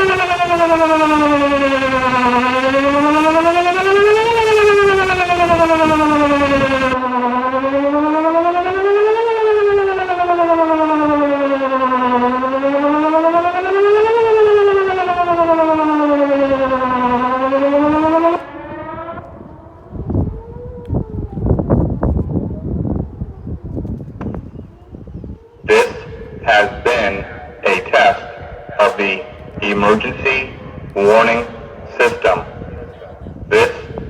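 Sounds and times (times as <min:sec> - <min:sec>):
wind buffeting microphone: 0:00.0 - 0:07.0, 0:15.3 - 0:34.0
warning siren wailing: 0:00.0 - 0:34.0.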